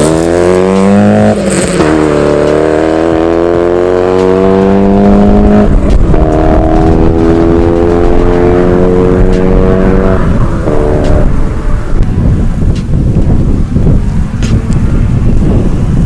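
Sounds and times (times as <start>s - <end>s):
car engine accelerating hard: 0.0s - 12.6s.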